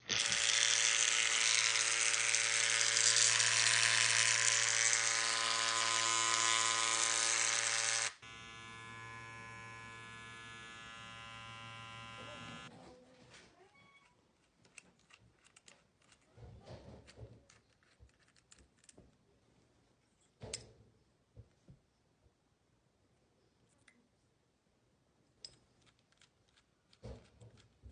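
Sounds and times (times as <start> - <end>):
hair clipper buzzing: 0.0 - 12.7.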